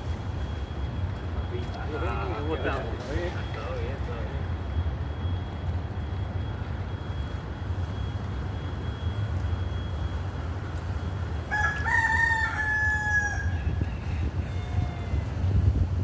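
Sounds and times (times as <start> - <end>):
rooster crowing: 11.4 - 15.7.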